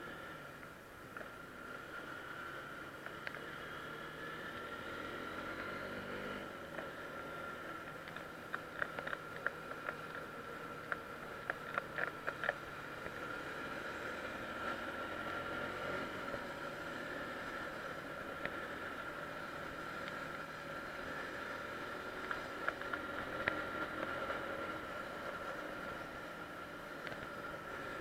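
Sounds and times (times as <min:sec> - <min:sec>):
sharp clicks: 0:07.9 - 0:13.2.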